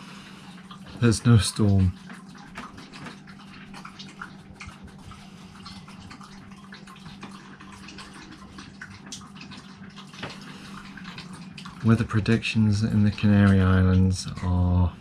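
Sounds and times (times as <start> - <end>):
water dripping and lapping: 0.0 - 15.0.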